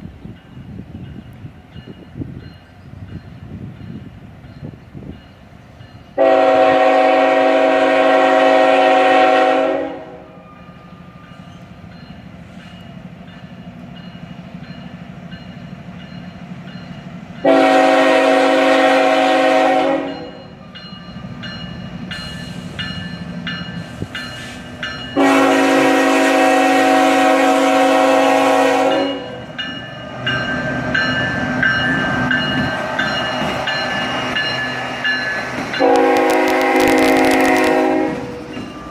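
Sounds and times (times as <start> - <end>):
train rumble: 0.0 - 38.9
locomotive air horn blasts: 6.2 - 10.5, 17.4 - 20.4, 25.2 - 29.4, 35.8 - 38.5.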